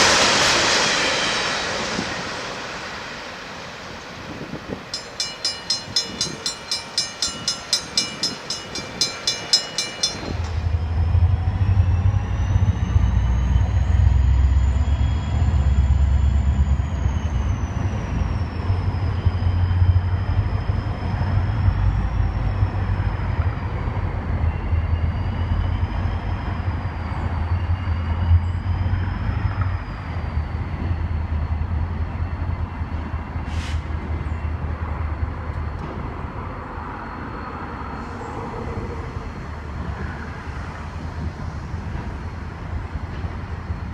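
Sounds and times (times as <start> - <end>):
train rumbling past: 0.0 - 43.9
bell ringing rapidly: 4.9 - 10.7
thin high whine: 5.0 - 11.0.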